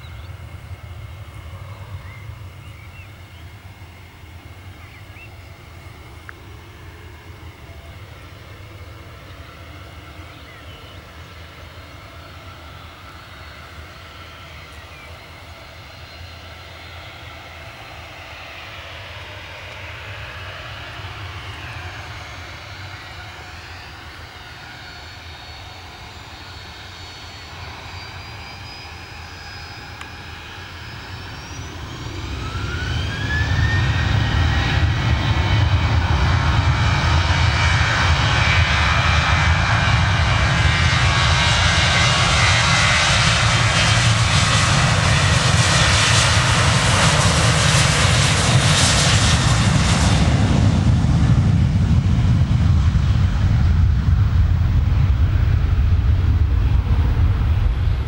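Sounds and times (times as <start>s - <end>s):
jet engines whining and roaring: 0.0s - 58.0s.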